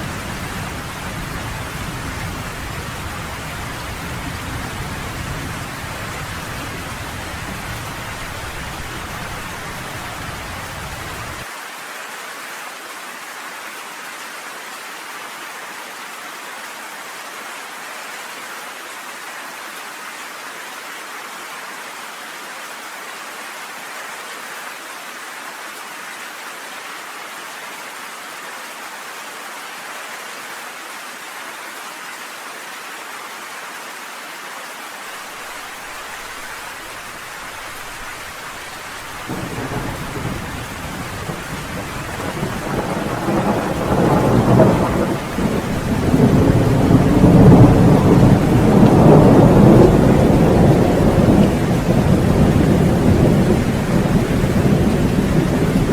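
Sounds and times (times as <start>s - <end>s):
rolling thunder rumble: 0.0s - 11.4s, 37.5s - 55.9s
steady rain hissing: 0.0s - 55.9s.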